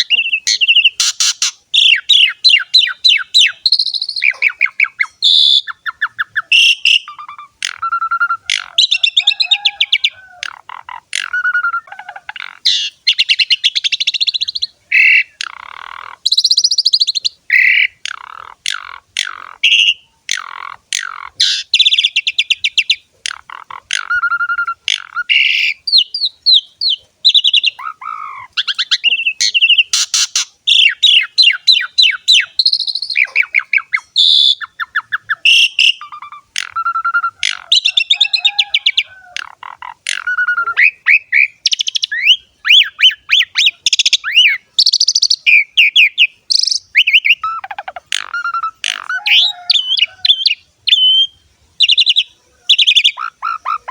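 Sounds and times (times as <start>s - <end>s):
starling singing: 0.0s - 53.9s.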